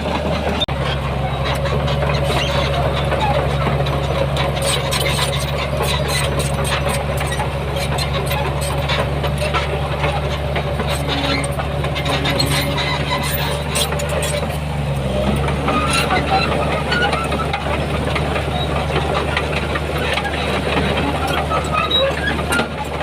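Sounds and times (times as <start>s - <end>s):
diesel engine running: 0.0s - 23.0s
light metal clanks and clicks: 0.1s - 23.0s.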